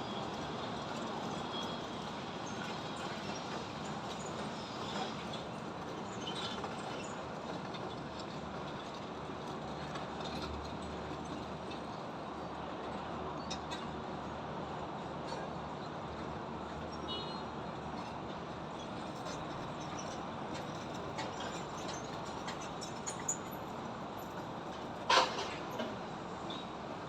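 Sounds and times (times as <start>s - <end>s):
construction site noise: 0.0s - 27.0s
highway traffic: 0.0s - 27.0s.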